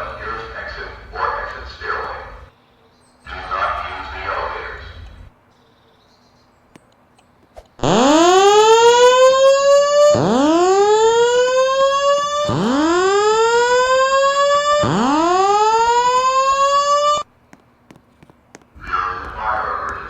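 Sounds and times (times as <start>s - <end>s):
fire alarm whoop tone: 7.8s - 17.3s.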